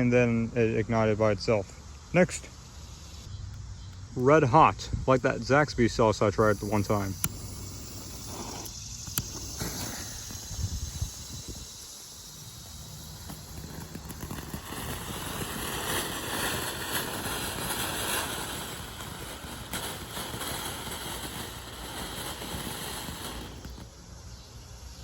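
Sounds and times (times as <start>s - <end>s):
firework spraying hiss: 1.9s - 3.3s, 5.4s - 24.4s
faint firework cracks: 6.4s - 24.0s.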